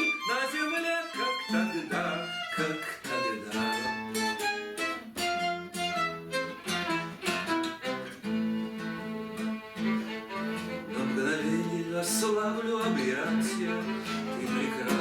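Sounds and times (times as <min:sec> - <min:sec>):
bowed strings: 0:01.2 - 0:15.0
plucked guitar notes: 0:03.1 - 0:15.0.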